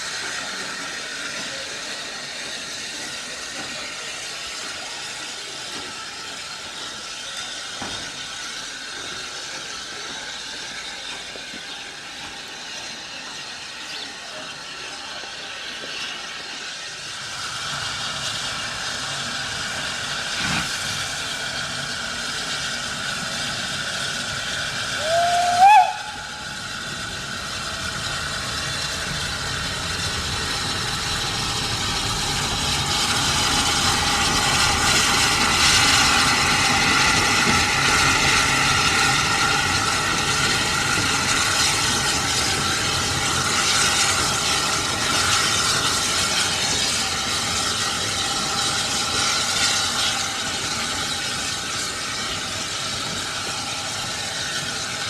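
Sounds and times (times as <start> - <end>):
steam hissing: 0.0 - 55.0
steam whistle blast: 24.9 - 26.7.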